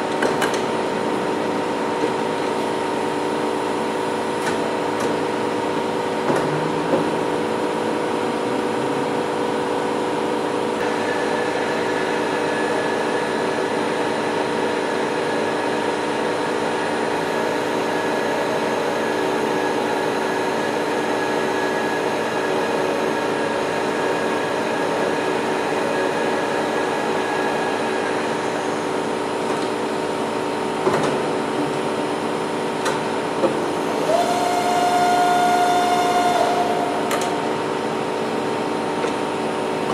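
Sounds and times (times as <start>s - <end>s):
milling machine humming: 0.0s - 39.9s
high whine: 33.8s - 39.7s.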